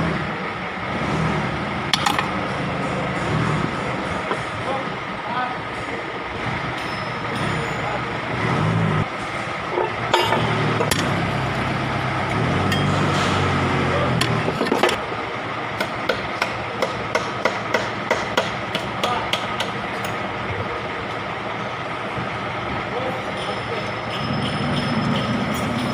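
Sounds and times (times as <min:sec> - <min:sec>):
hammer strikes: 0:01.9 - 0:05.0, 0:09.7 - 0:11.5, 0:12.2 - 0:15.0, 0:15.8 - 0:20.2, 0:23.3 - 0:25.9.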